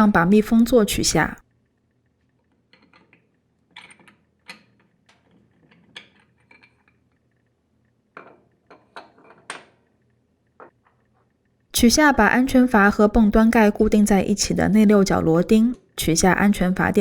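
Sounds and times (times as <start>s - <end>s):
clinks and taps of metal parts: 2.7s - 7.4s, 8.2s - 9.9s.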